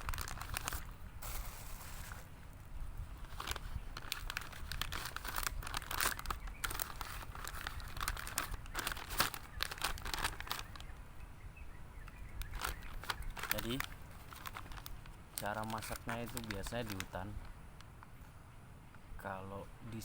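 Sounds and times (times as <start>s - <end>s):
plastic pouch crinkling: 0.0s - 2.4s, 3.1s - 11.0s, 12.4s - 17.4s.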